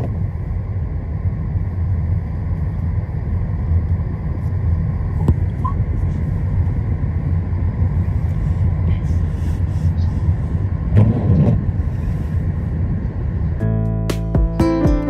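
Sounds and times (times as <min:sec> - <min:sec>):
road and engine rumble in car: 0:00.0 - 0:14.1.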